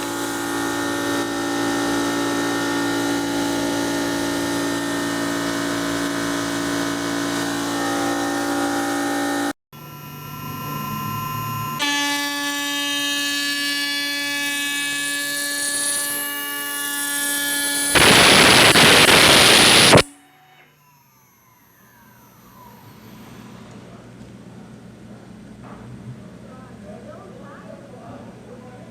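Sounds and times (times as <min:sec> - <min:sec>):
spindle motor whining: 0:00.0 - 0:25.7
faint falling whine: 0:09.8 - 0:11.8, 0:18.0 - 0:25.8.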